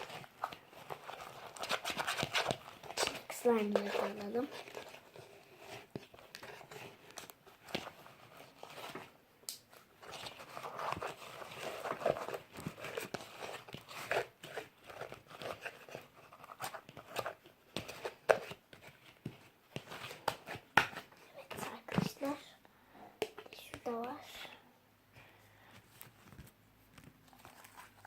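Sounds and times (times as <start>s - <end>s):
slime squelching and crackling: 0.0s - 8.9s.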